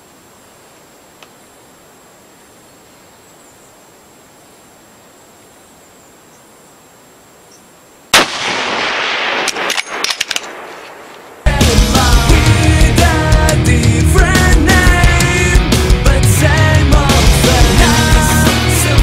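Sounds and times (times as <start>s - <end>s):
faint background hiss: 0.0s - 8.4s
short sharp cracks: 8.1s - 11.4s
loud rifle shot: 8.1s - 11.5s.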